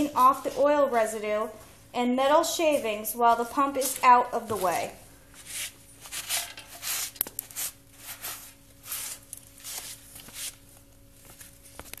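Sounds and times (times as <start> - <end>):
faint steady hum: 0.0 - 12.0
hand scrubbing strokes: 2.7 - 10.6.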